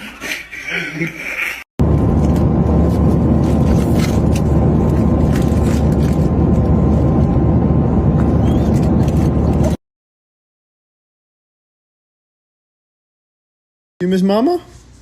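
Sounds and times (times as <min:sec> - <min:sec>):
low rumbling noise: 0:01.8 - 0:09.8.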